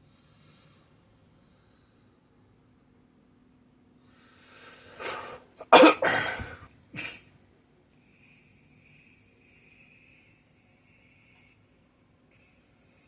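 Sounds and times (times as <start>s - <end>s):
drawn breath: 4.0s - 5.6s
person coughing: 5.0s - 7.3s.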